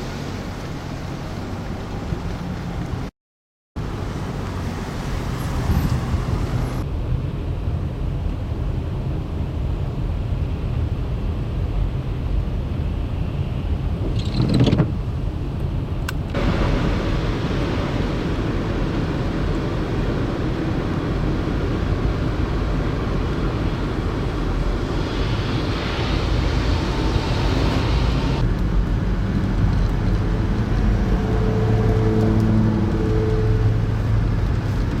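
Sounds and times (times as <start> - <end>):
road vehicles passing: 0.0 - 3.1, 3.8 - 9.2, 11.7 - 35.0
pitched engine hum: 9.4 - 35.0.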